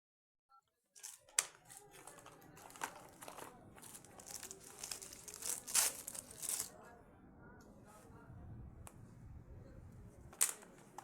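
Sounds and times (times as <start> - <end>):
wrapper crinkling: 1.0 - 6.8.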